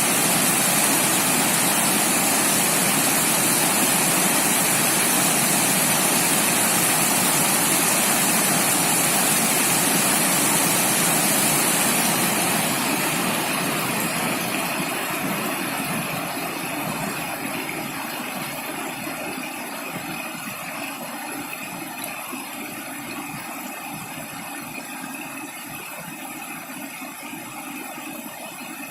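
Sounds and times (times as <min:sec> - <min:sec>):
stream rapids rushing: 0:00.0 - 0:19.0.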